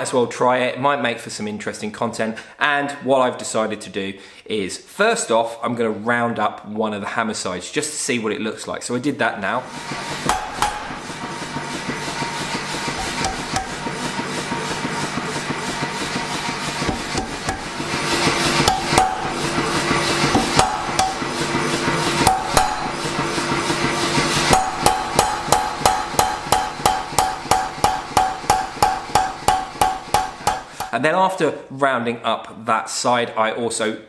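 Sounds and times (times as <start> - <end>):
hammer striking steel on anvil: 9.7 - 31.0.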